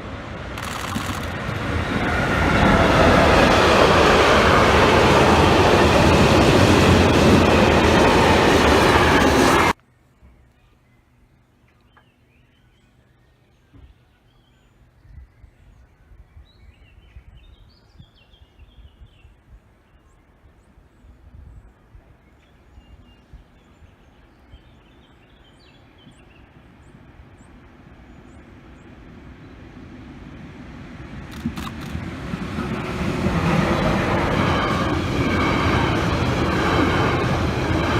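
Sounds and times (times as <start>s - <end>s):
train approaching: 0.0s - 9.8s, 24.5s - 37.9s.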